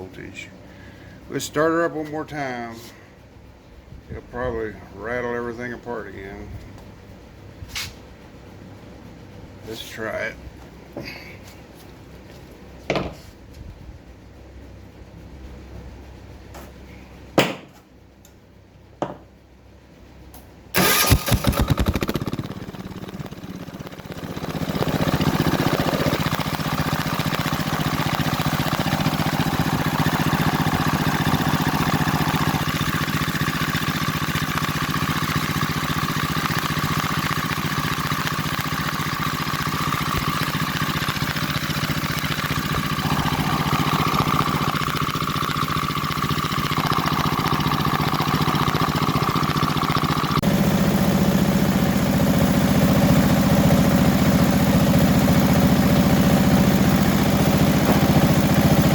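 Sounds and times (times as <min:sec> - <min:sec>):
generator engine cranking and running: 0:20.6 - 0:58.9.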